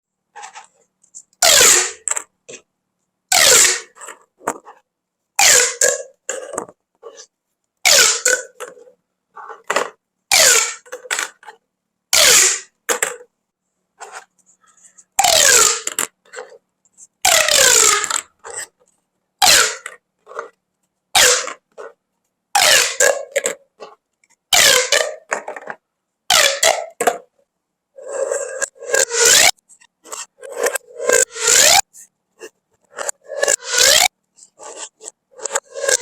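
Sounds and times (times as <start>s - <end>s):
plastic toy tubes whirling: 1.4s - 2.6s, 3.3s - 4.8s, 5.4s - 7.3s, 7.9s - 11.4s, 12.2s - 13.2s, 14.0s - 16.6s, 17.2s - 18.7s, 19.4s - 20.5s, 21.2s - 21.9s, 22.6s - 23.6s, 24.5s - 27.2s, 28.0s - 36.0s.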